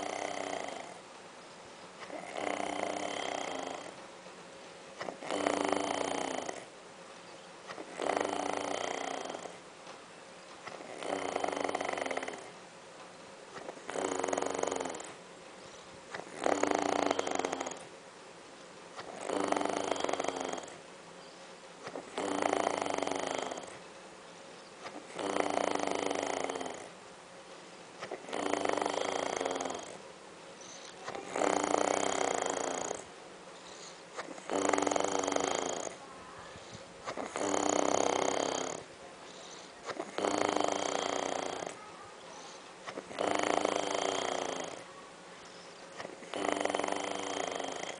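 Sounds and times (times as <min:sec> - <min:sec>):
man snoring: 0:00.0 - 0:01.0, 0:02.0 - 0:04.0, 0:05.0 - 0:06.7, 0:07.7 - 0:09.6, 0:10.7 - 0:12.6, 0:13.6 - 0:15.2, 0:16.1 - 0:17.9, 0:19.0 - 0:20.8, 0:21.9 - 0:23.8, 0:24.9 - 0:27.0, 0:28.0 - 0:30.0, 0:31.1 - 0:33.1, 0:34.2 - 0:36.0, 0:37.1 - 0:41.8, 0:42.9 - 0:44.9, 0:46.0 - 0:47.9.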